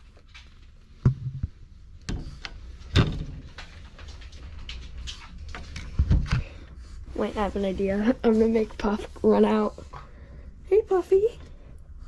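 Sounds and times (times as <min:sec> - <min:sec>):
knocks and thumps of handling: 0:01.0 - 0:04.2.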